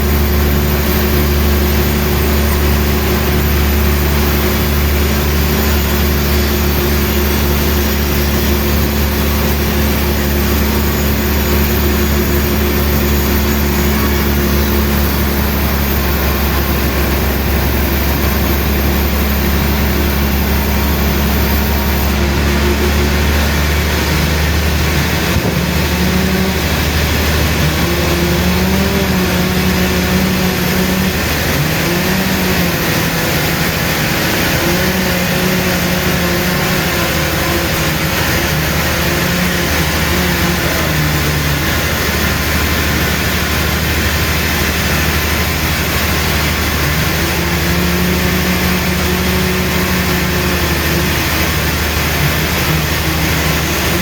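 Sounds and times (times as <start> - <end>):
machine motor humming: 0.0 - 54.0.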